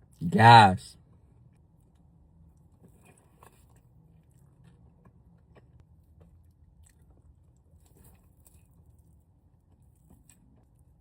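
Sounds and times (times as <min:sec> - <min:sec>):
chewing chicken wings: 0:01.4 - 0:11.0.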